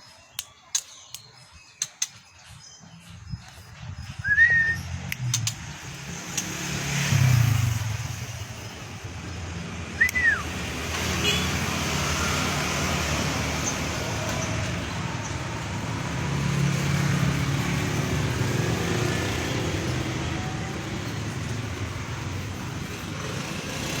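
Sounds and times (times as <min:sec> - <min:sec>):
road traffic engine hum: 0:01.8 - 0:24.0
faint short whistles: 0:04.2 - 0:04.8, 0:10.0 - 0:10.5.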